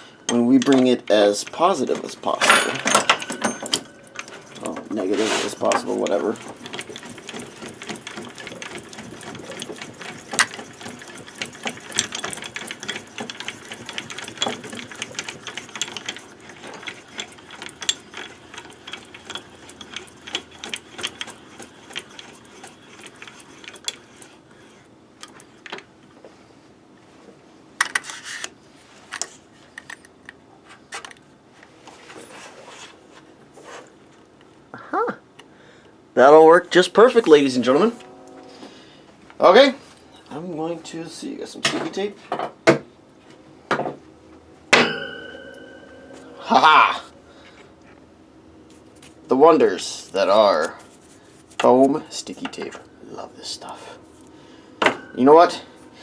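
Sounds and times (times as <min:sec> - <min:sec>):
handwheel mechanical clicking and rattling: 0:00.3 - 0:24.4.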